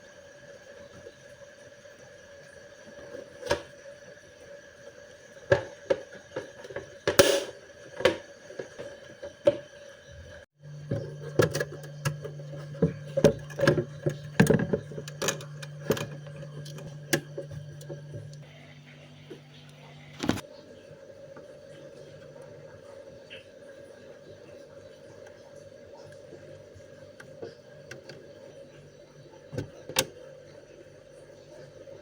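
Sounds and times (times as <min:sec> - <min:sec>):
steady hum: 0:10.0 - 0:32.0.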